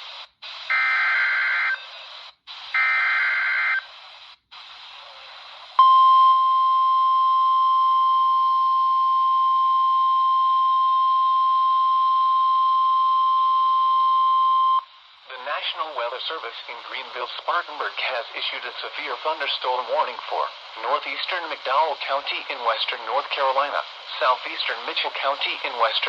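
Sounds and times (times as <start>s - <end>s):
static hiss: 0.0s - 5.8s, 14.4s - 26.0s
steady warning alarm tone: 0.7s - 1.8s, 2.8s - 3.8s.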